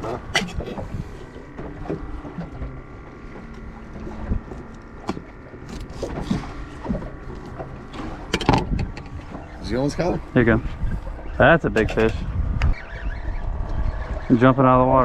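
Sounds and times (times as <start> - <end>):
gear knocking against boat: 0.0 - 9.7
wind and water rumble: 0.0 - 15.0.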